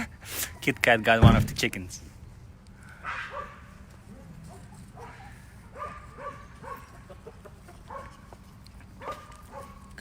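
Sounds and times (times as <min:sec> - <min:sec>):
chickens clucking: 0:06.6 - 0:08.5.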